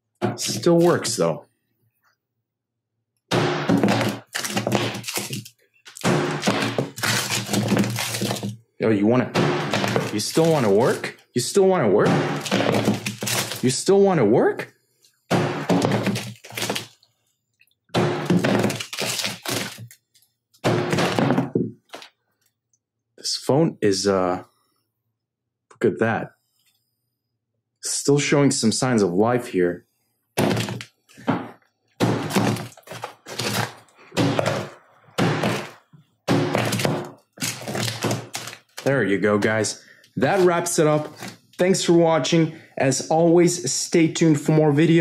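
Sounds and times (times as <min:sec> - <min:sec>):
hammer striking a phone: 0:03.3 - 0:04.2
glass crunching and breaking: 0:03.4 - 0:08.6, 0:09.6 - 0:11.0, 0:12.2 - 0:13.7, 0:15.5 - 0:17.0, 0:18.0 - 0:20.1, 0:32.0 - 0:38.9.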